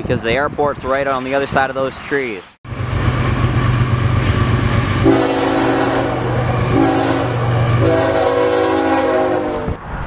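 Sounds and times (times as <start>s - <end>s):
locomotive engine rumble: 2.7s - 10.0s.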